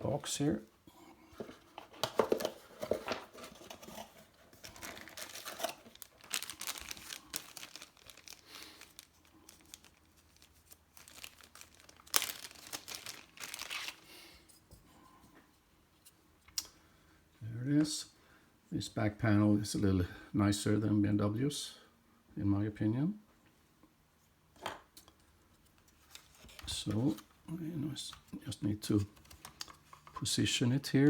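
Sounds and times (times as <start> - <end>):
packaging rustling and crinkling: 1.4 - 14.2
packaging tearing: 3.5 - 14.1.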